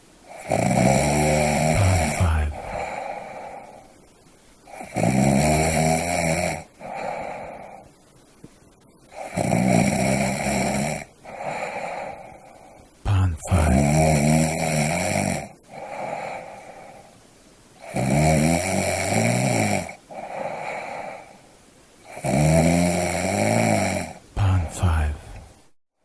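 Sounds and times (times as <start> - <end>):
soft breathing: 0.2 - 4.9, 6.8 - 9.4, 11.2 - 13.8, 15.6 - 17.9, 20.1 - 21.6
person snoring: 0.3 - 3.9, 4.7 - 7.8, 9.1 - 17.1, 17.8 - 21.4, 22.1 - 25.6.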